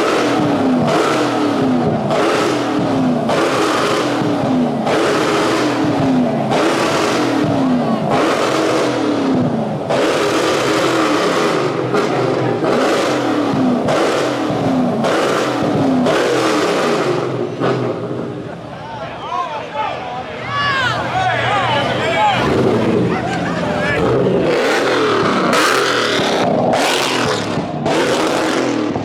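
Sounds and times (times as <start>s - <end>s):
car engine revving hard: 0.0s - 18.6s, 21.5s - 29.0s
loud rushing noise: 19.8s - 29.0s.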